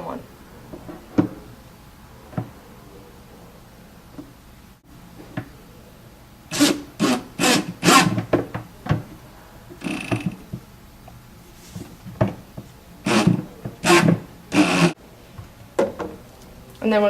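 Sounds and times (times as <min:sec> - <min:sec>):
screw rasping into wood: 0:06.5 - 0:08.2, 0:13.1 - 0:15.0.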